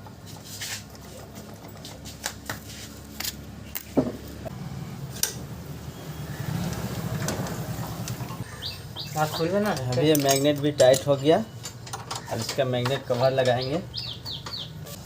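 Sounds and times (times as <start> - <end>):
metallic clicks of hand tools: 9.6 - 12.6.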